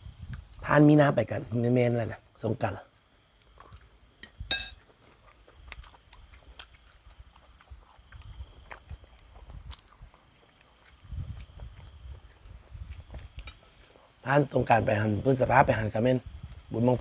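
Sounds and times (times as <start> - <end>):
wind rumbling on microphone: 0.0 - 0.8, 5.7 - 10.2, 10.9 - 13.5, 14.6 - 17.0
chewing with small clicks: 2.8 - 14.6, 16.3 - 17.0.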